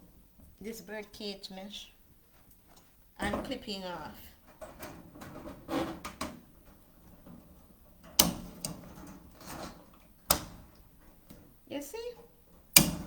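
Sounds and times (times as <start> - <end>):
cutters snipping wire mesh: 8.0 - 11.4, 12.7 - 13.0
mesh handling clicks: 8.0 - 11.4.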